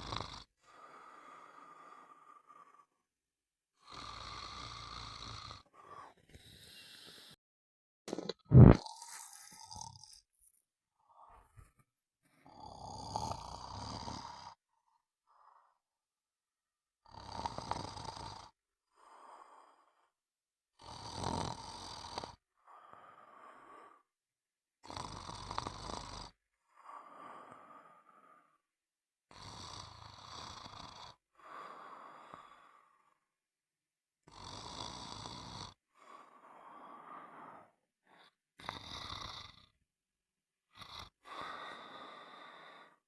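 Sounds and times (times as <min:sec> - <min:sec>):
person snoring: 0:00.0 - 0:03.0, 0:03.8 - 0:07.4, 0:08.1 - 0:10.2, 0:12.4 - 0:14.6, 0:17.0 - 0:20.0, 0:20.8 - 0:24.0, 0:24.8 - 0:28.5, 0:29.3 - 0:33.2, 0:34.3 - 0:39.8, 0:40.7 - 0:43.0.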